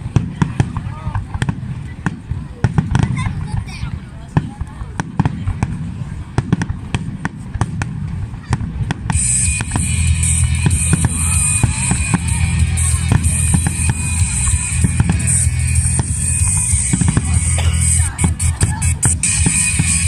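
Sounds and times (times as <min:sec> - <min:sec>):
fireworks cracks and bangs: 0:00.0 - 0:20.0
loud music with drum beat: 0:09.1 - 0:20.0.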